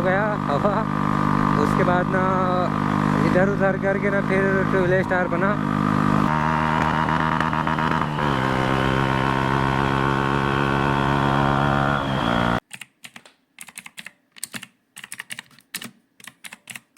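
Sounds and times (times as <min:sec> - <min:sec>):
motorcycle engine idling: 0:00.0 - 0:08.3
sharp irregular clicks: 0:12.7 - 0:16.9.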